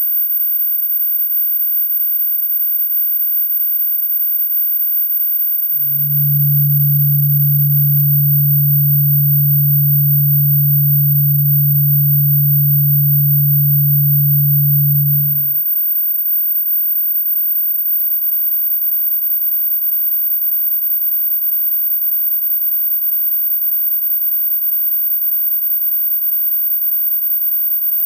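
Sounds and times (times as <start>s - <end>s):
high thin steady whine: 5.8s - 15.6s
low steady hum tone: 5.8s - 15.6s.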